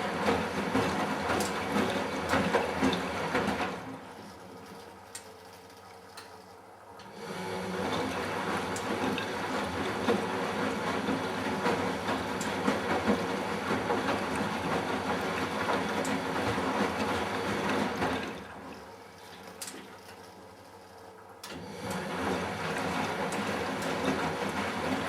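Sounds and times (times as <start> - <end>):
washing machine drum turning: 7.8 - 18.5.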